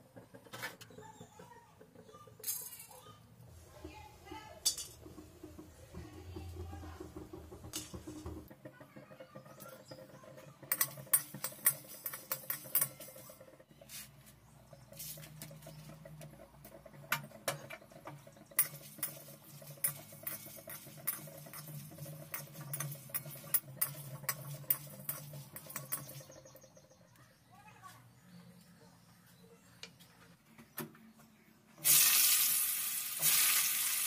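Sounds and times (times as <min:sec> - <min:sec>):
kitchen clicks and taps: 0:04.6 - 0:13.8, 0:14.7 - 0:26.6.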